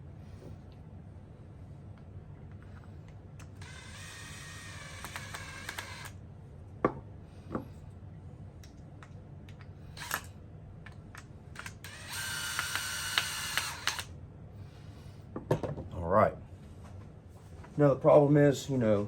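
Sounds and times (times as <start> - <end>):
cordless drill driving screw: 3.6 - 6.2, 10.0 - 10.3, 11.6 - 14.1.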